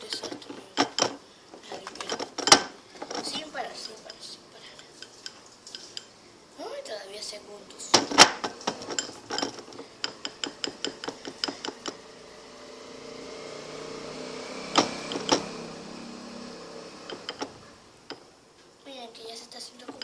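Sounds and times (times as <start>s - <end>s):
slime stirring: 0.0s - 6.2s, 7.8s - 12.0s
utensil clicking against bowl: 8.2s - 12.0s.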